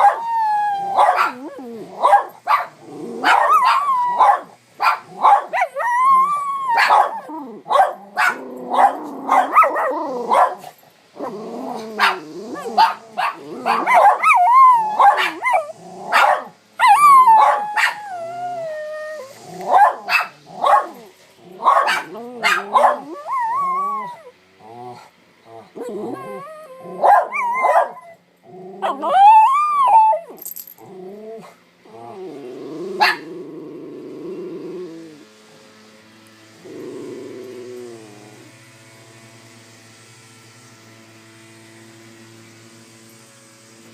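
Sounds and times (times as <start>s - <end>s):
dog growling: 0.0s - 35.3s, 36.6s - 38.6s
dog whining and howling: 0.0s - 35.3s, 36.6s - 38.8s
dog barking: 1.0s - 1.4s, 2.0s - 5.7s, 6.8s - 10.7s, 12.0s - 14.4s, 15.0s - 16.5s, 17.4s - 18.0s, 19.7s - 21.0s, 21.6s - 23.2s, 27.0s - 28.0s, 33.0s - 33.3s.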